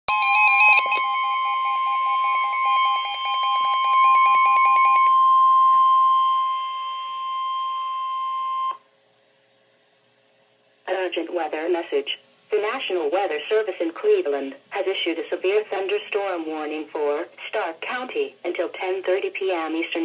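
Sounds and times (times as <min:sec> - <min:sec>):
stepping data tones: 0:00.1 - 0:05.1
rapid pulsing beep: 0:00.1 - 0:06.4
steady high alert tone: 0:00.1 - 0:08.7.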